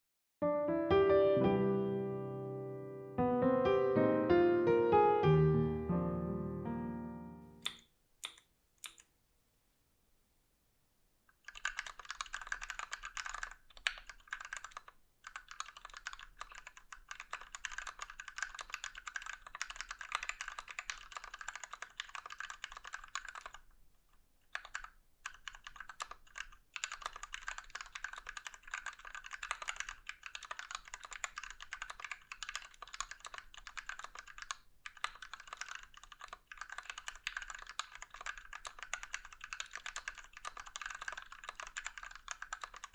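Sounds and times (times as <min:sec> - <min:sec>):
fast typing on mechanical keyboard: 0:11.4 - 0:23.8, 0:24.5 - 0:42.9.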